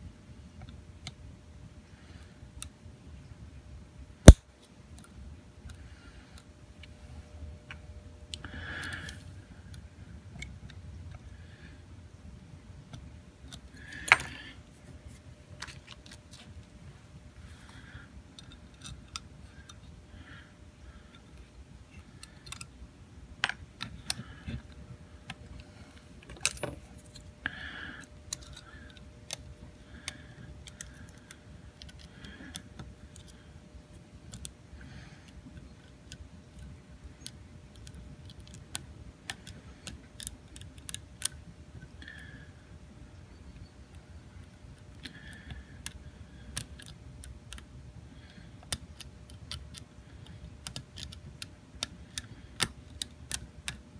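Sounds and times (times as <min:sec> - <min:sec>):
lock picking metallic clicks: 0:26.2 - 0:27.3, 0:48.6 - 0:53.8.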